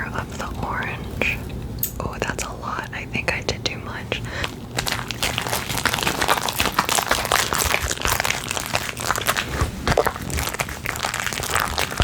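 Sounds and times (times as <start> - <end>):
slime squishing by hand: 4.4 - 12.0.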